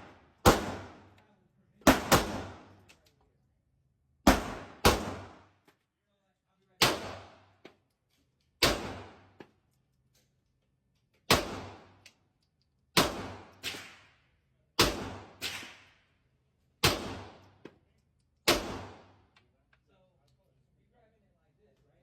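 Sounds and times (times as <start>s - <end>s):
gunshots: 0.0s - 1.2s, 1.8s - 2.8s, 4.2s - 5.5s, 6.8s - 7.4s, 8.6s - 9.4s, 11.3s - 12.0s, 13.0s - 14.1s, 14.8s - 15.9s, 16.8s - 17.6s, 18.4s - 19.2s.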